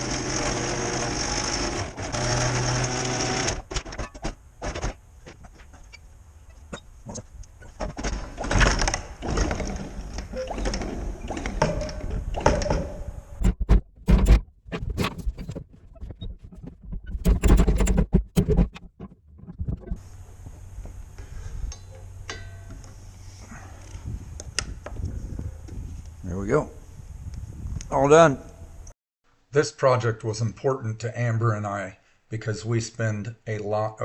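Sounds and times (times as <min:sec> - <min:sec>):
hard thunks: 0:12.7 - 0:19.1.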